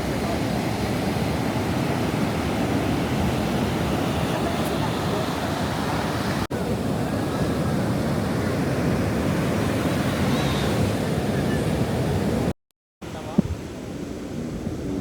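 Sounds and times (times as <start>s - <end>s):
ocean surf breaking: 0.0s - 15.0s
wind on microphone: 13.2s - 15.0s.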